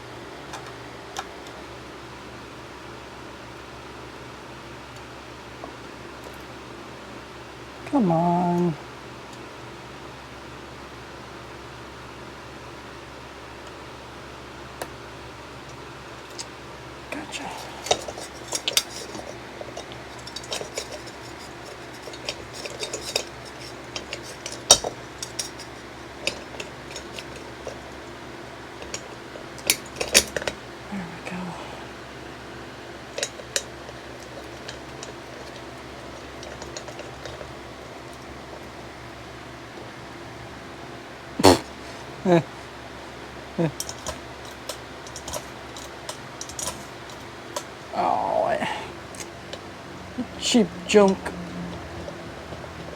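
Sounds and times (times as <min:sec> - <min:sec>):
metal parts and tools clinking: 0:17.7 - 0:27.9, 0:28.8 - 0:30.6, 0:33.1 - 0:35.6, 0:43.7 - 0:47.7
clicks of small parts handled: 0:43.8 - 0:47.7.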